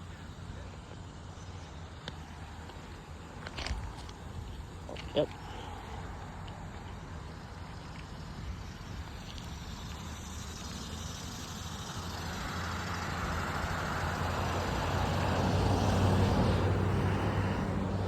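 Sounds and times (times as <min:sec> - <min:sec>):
diesel locomotive rumble: 0:00.0 - 0:18.0.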